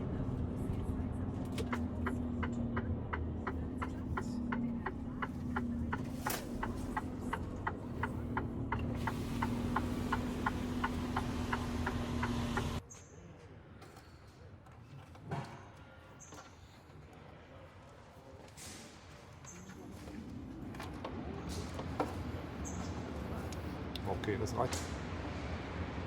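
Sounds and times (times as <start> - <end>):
machinery rumble and hum: 0.0 - 12.8.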